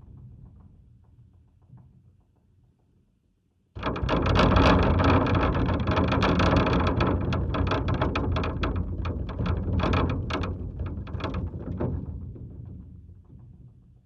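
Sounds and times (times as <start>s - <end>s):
rapid clanking and rattling: 3.8s - 12.2s.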